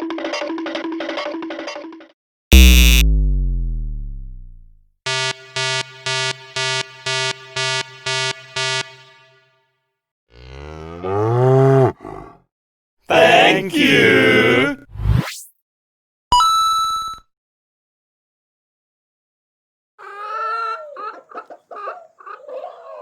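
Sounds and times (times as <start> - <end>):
short buzzer beeps: 2.5 - 3.2, 5.1 - 9.5
loud hit with falling pitch: 2.5 - 4.8
swooping electronic tone: 2.5 - 9.4
rhythmic electronic jingle: 2.5 - 9.5.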